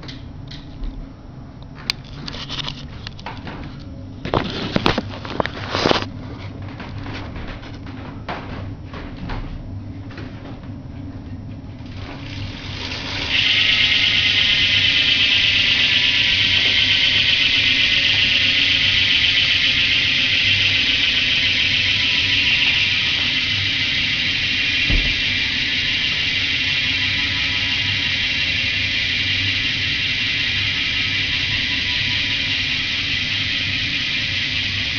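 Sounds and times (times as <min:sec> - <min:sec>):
bike hub ratchet buzzing: 0:11.8 - 0:34.9.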